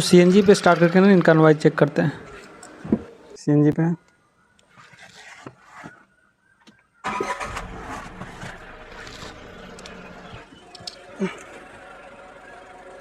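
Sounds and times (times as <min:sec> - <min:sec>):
car engine starting and idling: 0:00.0 - 0:02.8, 0:07.0 - 0:13.0.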